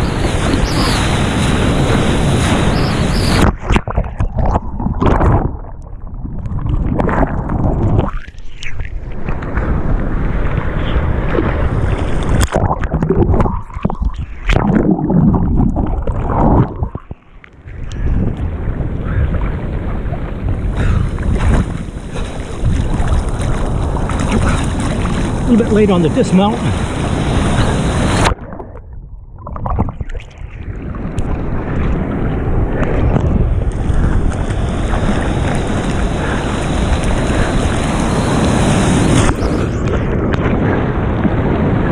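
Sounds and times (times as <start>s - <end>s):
wind buffeting microphone: 0.0s - 8.1s, 8.9s - 41.9s
water rushing and splashing: 0.0s - 41.9s
low underwater rumble: 3.4s - 8.2s, 8.9s - 25.4s, 27.6s - 38.0s.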